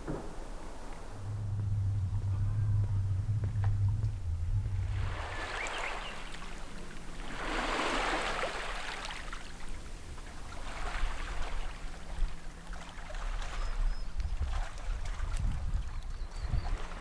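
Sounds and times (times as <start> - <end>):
steady low rumble: 0.0 - 7.5
small waves washing in: 3.0 - 13.7.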